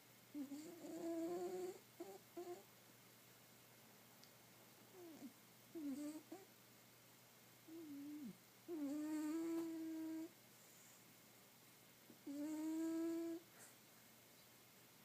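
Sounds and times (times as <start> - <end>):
cat snoring: 0.4 - 2.6, 4.9 - 6.5, 7.7 - 10.3, 12.2 - 13.4.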